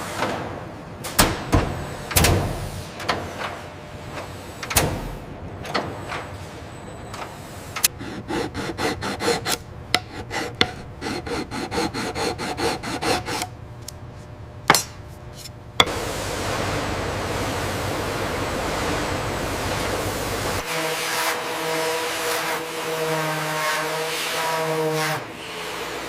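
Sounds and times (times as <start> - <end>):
rasping strokes on wood: 7.9 - 13.5
steady machine noise: 15.7 - 20.6.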